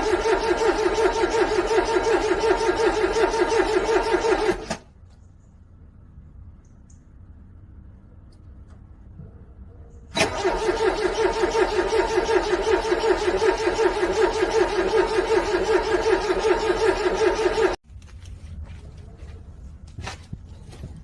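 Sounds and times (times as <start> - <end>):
car starter motor cranking: 0.0 - 4.9, 10.1 - 17.8.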